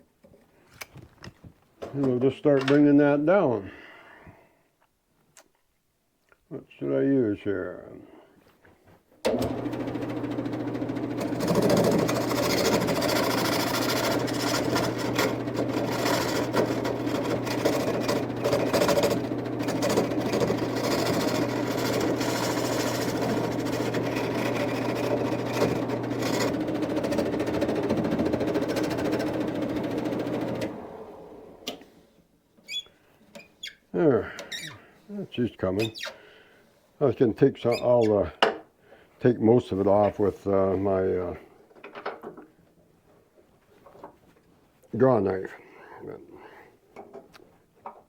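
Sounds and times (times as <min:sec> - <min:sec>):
lathe motor humming: 0:09.3 - 0:31.8
turning tool scraping wood: 0:09.4 - 0:30.8.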